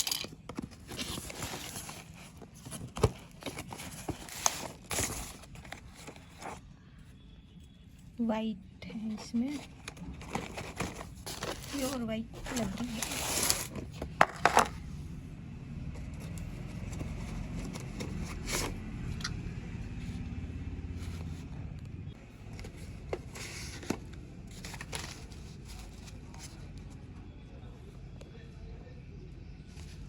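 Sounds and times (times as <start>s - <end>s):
packaging rustling: 0.0s - 6.6s, 9.3s - 14.8s, 22.4s - 26.7s.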